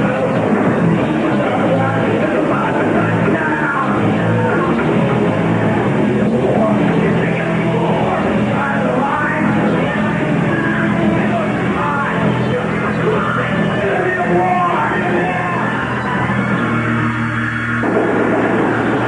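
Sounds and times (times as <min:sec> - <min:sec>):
punk rock band playing live: 0:00.0 - 0:19.0.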